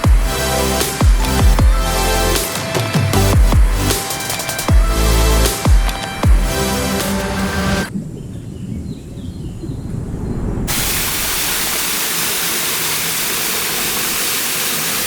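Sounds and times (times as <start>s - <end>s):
low rumble: 9.3s - 11.3s
waterfall rushing: 10.7s - 15.0s.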